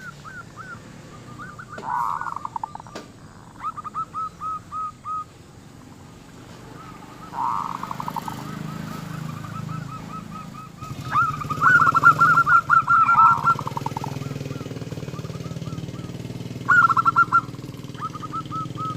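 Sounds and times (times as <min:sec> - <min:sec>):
dove cooing: 0:00.0 - 0:05.4, 0:06.3 - 0:18.9
engine humming: 0:00.0 - 0:18.9.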